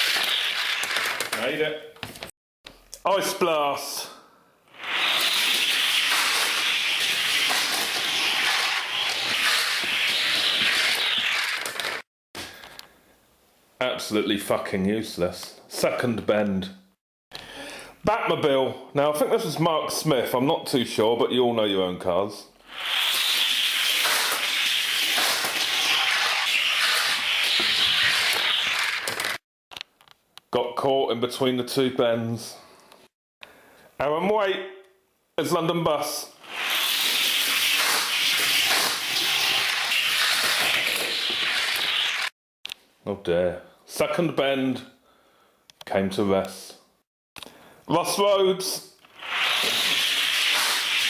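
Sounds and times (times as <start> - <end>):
toy car rolling on plastic track: 0.0 - 1.4, 4.8 - 12.0, 22.7 - 29.4, 36.5 - 42.3, 49.1 - 51.0.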